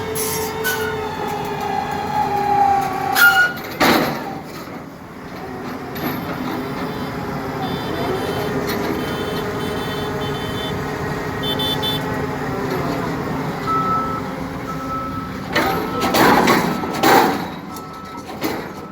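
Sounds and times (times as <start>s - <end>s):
short warning beeps: 13.6s - 16.1s
loud clattering: 15.4s - 18.9s.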